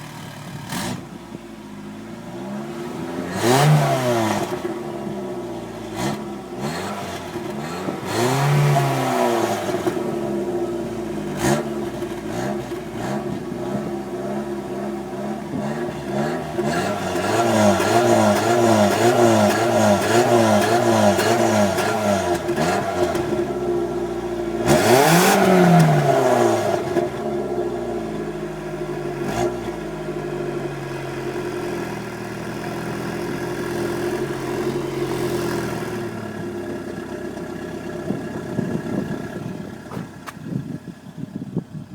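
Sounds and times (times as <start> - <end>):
car engine revving and idling: 0.0 - 41.9.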